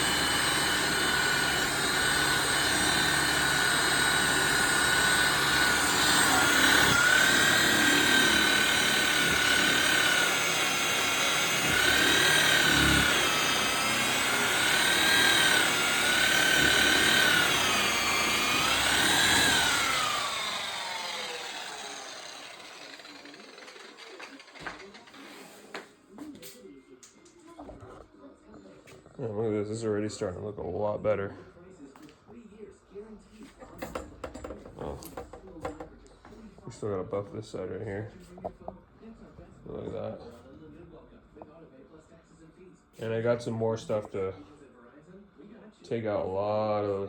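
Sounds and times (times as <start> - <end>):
electric polisher motor whine: 0.0 - 24.2.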